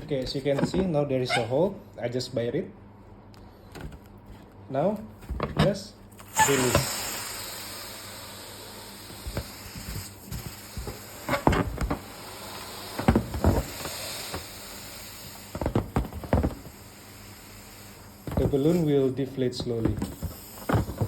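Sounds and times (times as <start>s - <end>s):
air hissing out of balloon: 6.2s - 21.0s
fingers rustling on balloon: 6.3s - 21.0s.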